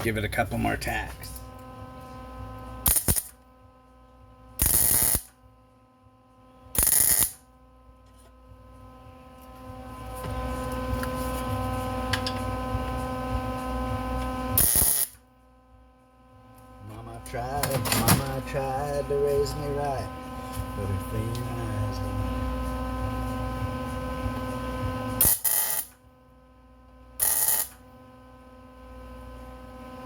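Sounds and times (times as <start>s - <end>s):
steady electrical hum: 0.0s - 30.0s
tack welding bursts: 2.8s - 3.4s, 4.6s - 5.4s, 6.7s - 7.4s, 14.6s - 15.2s, 25.2s - 26.0s, 27.2s - 27.8s.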